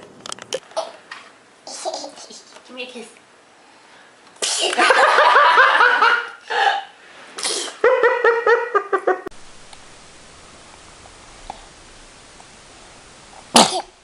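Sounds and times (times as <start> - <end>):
small child giggling: 1.7 - 2.6, 7.6 - 9.3
child sneezing: 4.4 - 4.8, 6.6 - 7.8, 13.5 - 14.0.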